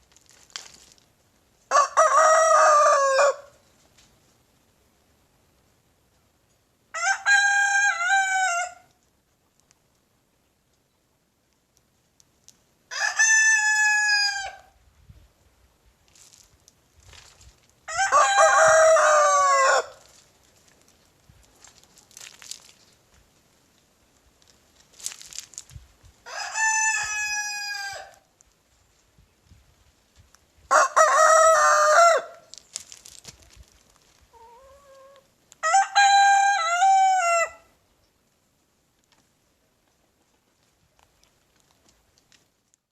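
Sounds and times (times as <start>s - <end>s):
rooster crowing: 1.7s - 3.6s, 7.0s - 8.9s, 12.9s - 14.7s, 17.9s - 20.1s, 26.3s - 28.2s, 30.7s - 32.4s, 34.5s - 37.7s.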